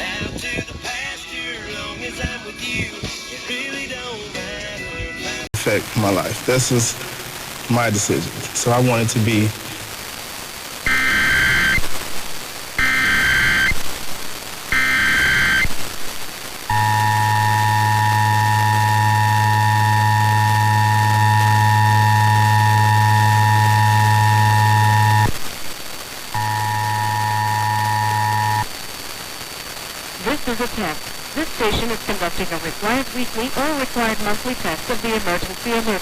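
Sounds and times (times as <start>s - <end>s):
low buzz: 9.6s - 32.2s
screeching digital header bursts: 10.8s - 25.4s, 26.3s - 28.8s
two-tone attention signal: 10.9s - 11.8s, 14.7s - 15.7s, 16.7s - 25.3s, 26.4s - 28.7s.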